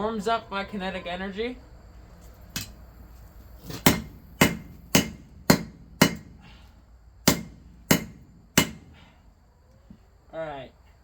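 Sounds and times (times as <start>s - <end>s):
hammer striking metal on anvil: 3.8s - 6.4s, 7.2s - 8.9s.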